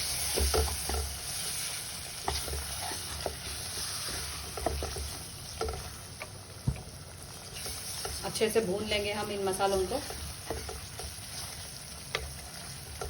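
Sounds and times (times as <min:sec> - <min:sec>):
utensil scraping a pan: 0:00.0 - 0:06.0, 0:07.5 - 0:13.0
food sizzling in hot oil: 0:00.0 - 0:13.0.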